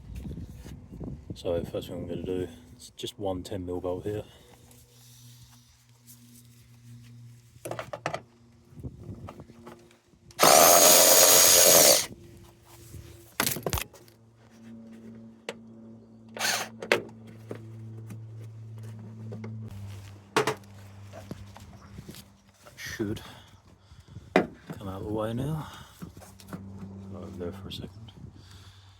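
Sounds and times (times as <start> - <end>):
cordless power tool running: 10.4 - 12.1, 16.4 - 16.8.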